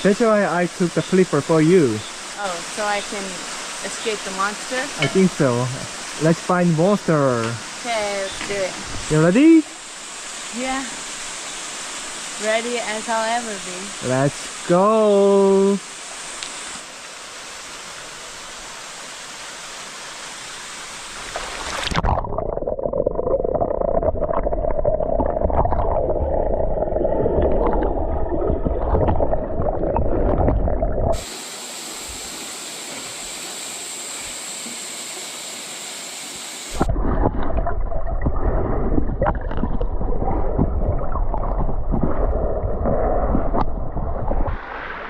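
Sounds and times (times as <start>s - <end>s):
even hiss: 0.0s - 21.9s, 31.2s - 36.9s
underwater bubbling and gurgling: 21.2s - 31.3s, 36.7s - 45.0s
water churning against microphone: 21.3s - 31.3s, 36.7s - 45.0s.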